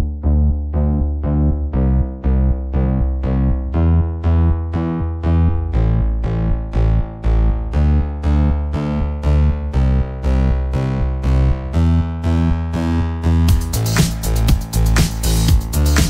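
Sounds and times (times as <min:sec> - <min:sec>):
keyboard chords over deep bass: 0:00.0 - 0:16.0
drums: 0:13.5 - 0:16.0.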